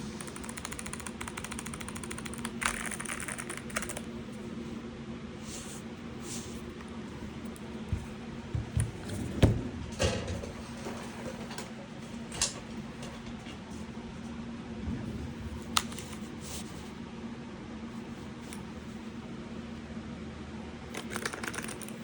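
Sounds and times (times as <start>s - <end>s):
steady low hum: 0.0s - 22.0s
keyboard clicks: 0.2s - 4.1s, 21.0s - 22.0s.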